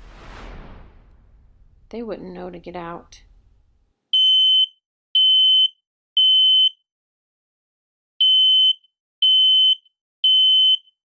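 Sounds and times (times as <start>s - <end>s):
smoke alarm high-pitched beeps: 4.2s - 6.8s, 8.2s - 11.0s.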